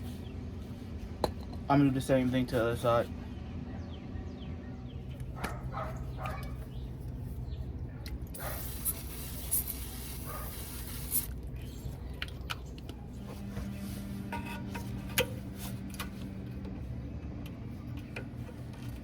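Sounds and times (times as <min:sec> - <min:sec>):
dog barking and whimpering: 0:05.4 - 0:06.6.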